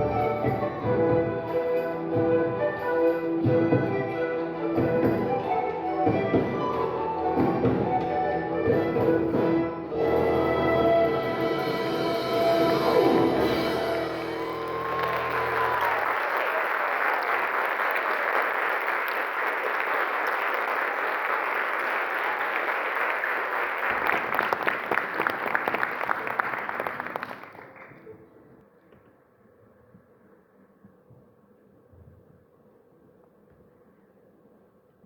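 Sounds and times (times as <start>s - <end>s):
orchestra final chord: 9.9s - 15.9s
audience applause: 13.2s - 28.3s.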